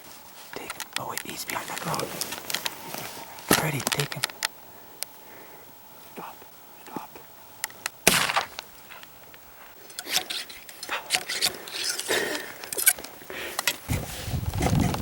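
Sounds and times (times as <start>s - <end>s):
clicks and rustling: 0.5s - 4.6s
rifle shot: 8.0s - 8.6s.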